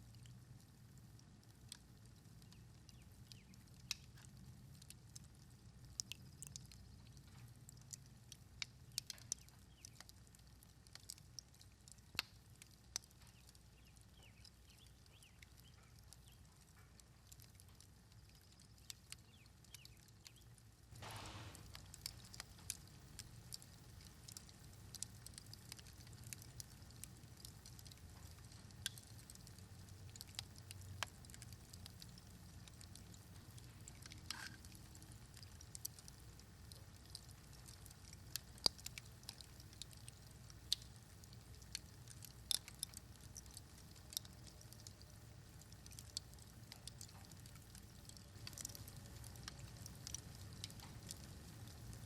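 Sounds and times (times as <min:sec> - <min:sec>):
faint sharp clicks: 0:08.6 - 0:10.2, 0:12.1 - 0:17.9.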